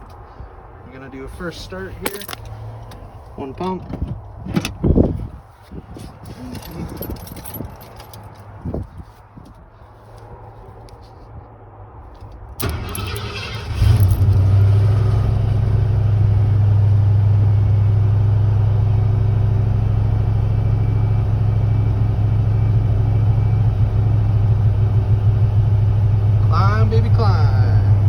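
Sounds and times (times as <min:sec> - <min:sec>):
starter motor cranking: 0:12.6 - 0:14.4
engine idling: 0:12.6 - 0:28.0.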